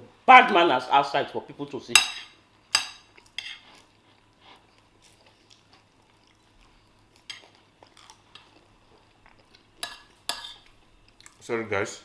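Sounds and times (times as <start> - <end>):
cutlery clinking against a plate: 2.0 - 3.6, 9.8 - 10.7.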